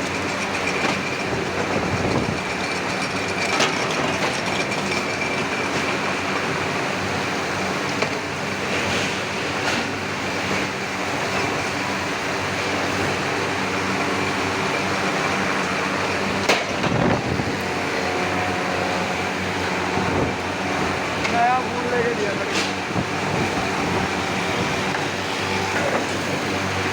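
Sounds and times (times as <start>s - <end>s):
machinery noise with hum: 0.0s - 26.9s.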